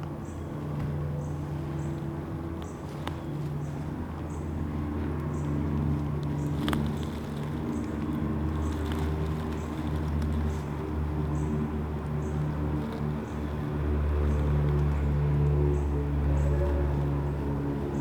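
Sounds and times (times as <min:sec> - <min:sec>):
traffic engine hum: 0:00.0 - 0:18.0.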